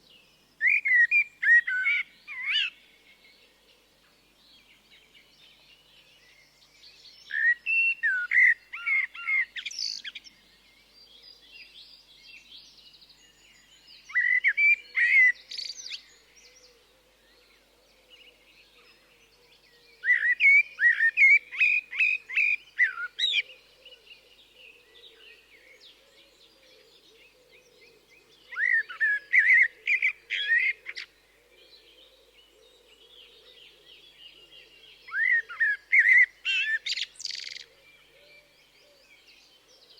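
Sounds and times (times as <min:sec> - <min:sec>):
blackbird singing: 0:00.0 - 0:03.6, 0:04.4 - 0:39.9
faint bird chirps: 0:00.0 - 0:39.9.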